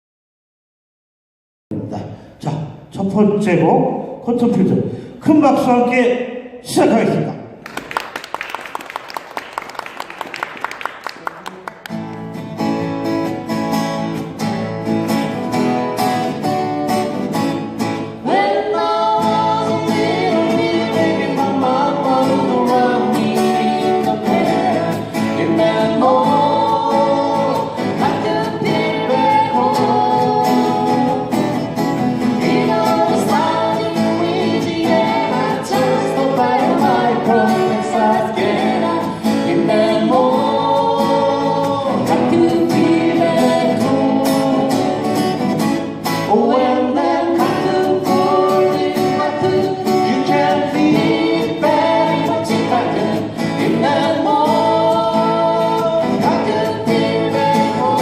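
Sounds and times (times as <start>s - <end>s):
audience applause: 7.6s - 12.3s
strummed acoustic guitars: 11.1s - 58.0s
bass: 11.9s - 58.0s
person singing: 18.3s - 31.5s, 32.4s - 45.4s, 46.2s - 58.0s.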